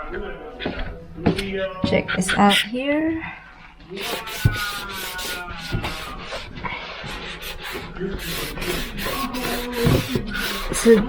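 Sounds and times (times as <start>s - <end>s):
cloth rubbing refrigerator surface: 3.9s - 11.0s.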